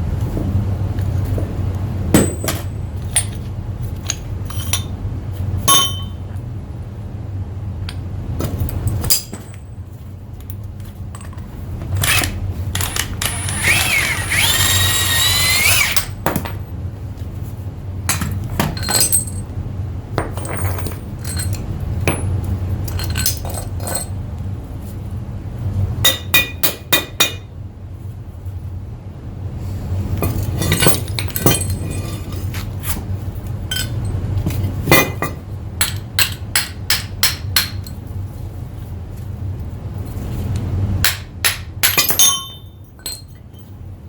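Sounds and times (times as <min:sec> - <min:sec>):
steady low hum: 0:00.0 - 0:44.0
metal tools clinking: 0:30.2 - 0:32.6, 0:33.7 - 0:35.2, 0:41.9 - 0:43.7.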